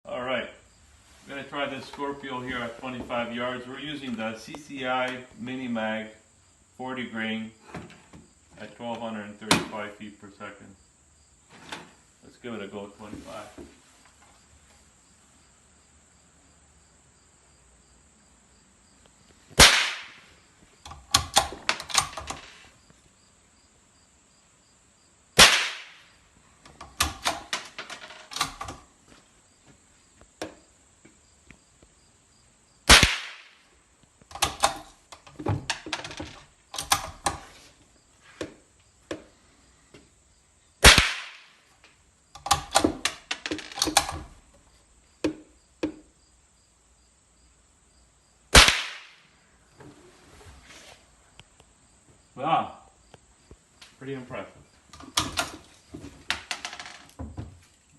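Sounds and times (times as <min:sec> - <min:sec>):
sharp rifle shots: 0:19.6 - 0:20.3, 0:25.4 - 0:26.1, 0:32.9 - 0:33.6, 0:40.8 - 0:41.6, 0:48.5 - 0:49.2.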